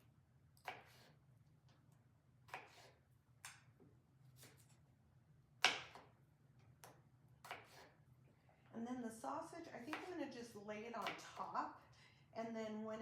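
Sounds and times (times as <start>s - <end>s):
knife striking cutting board: 5.6s - 6.1s.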